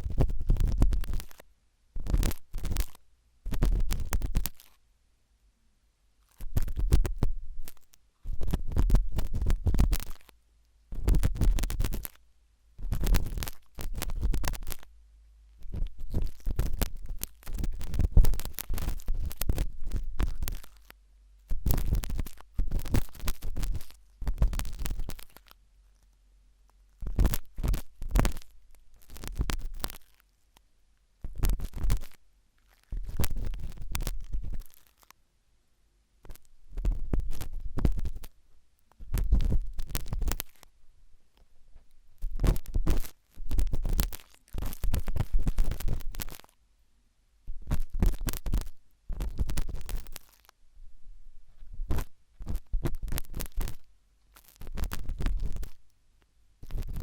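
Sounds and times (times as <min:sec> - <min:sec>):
toothpick scraping inside an ear: 0:00.0 - 0:01.4, 0:02.0 - 0:04.8, 0:06.2 - 0:10.3, 0:10.9 - 0:12.2, 0:12.8 - 0:14.9, 0:15.6 - 0:26.1, 0:27.0 - 0:30.2, 0:31.2 - 0:35.1, 0:36.2 - 0:38.3, 0:39.0 - 0:40.6, 0:42.2 - 0:46.6, 0:47.6 - 0:50.5, 0:51.6 - 0:55.8, 0:56.6 - 0:57.0.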